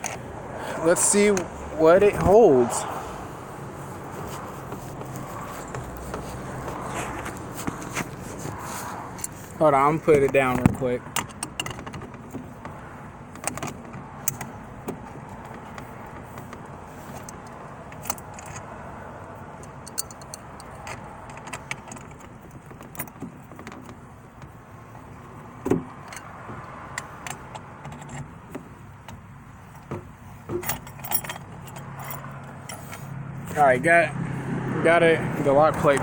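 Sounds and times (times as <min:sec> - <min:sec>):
metal clicks and clinks: 0:19.6 - 0:24.0, 0:30.6 - 0:33.0.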